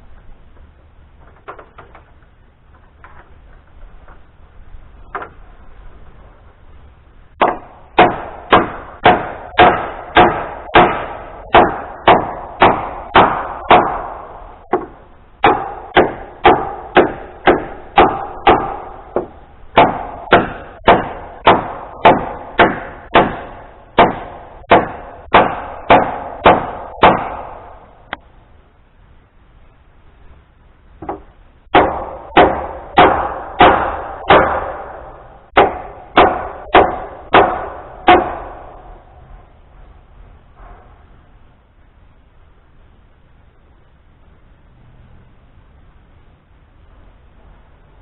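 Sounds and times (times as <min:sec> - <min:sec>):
hammer driving nails into wood: 0:07.4 - 0:27.6.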